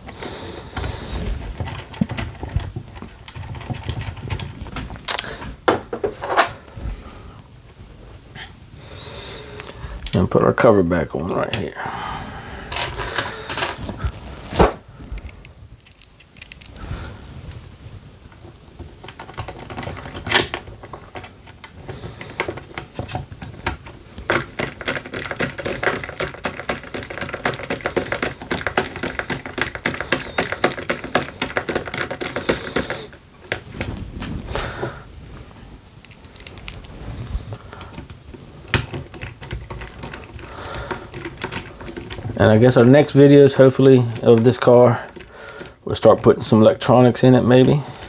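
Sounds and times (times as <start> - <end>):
small clicks and taps: 18.3 - 33.9, 36.0 - 42.4, 43.0 - 46.5.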